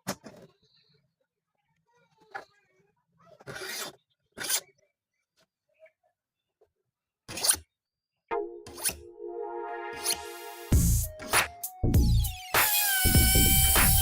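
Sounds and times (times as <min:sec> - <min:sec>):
music with held notes: 0:08.3 - 0:14.0.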